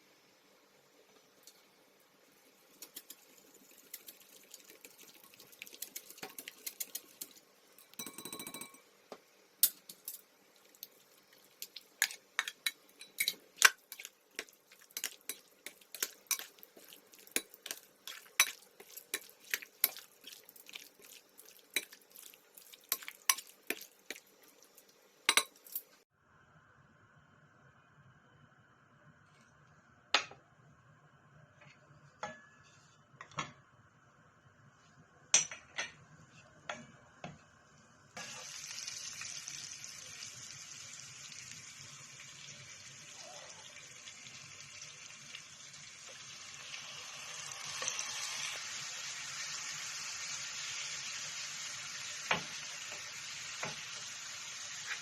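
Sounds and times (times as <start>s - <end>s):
utensils clinking against dishes: 6.0s - 8.8s, 12.0s - 20.0s, 25.3s - 25.9s.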